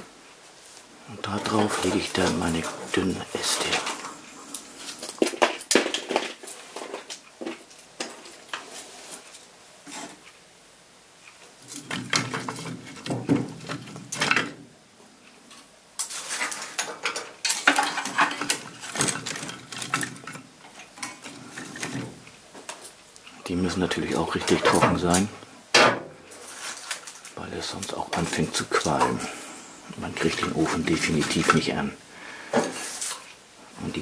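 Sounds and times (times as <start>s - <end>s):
dry branches clattering: 0.6s - 10.1s, 15.5s - 25.3s, 26.3s - 31.9s.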